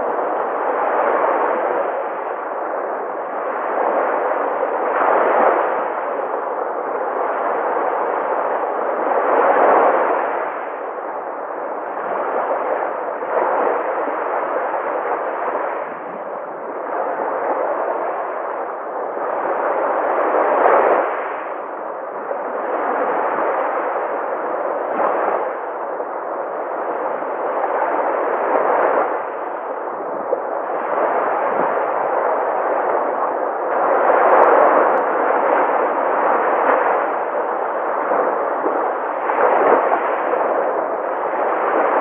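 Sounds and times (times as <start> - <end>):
sea waves breaking: 0.0 - 42.0.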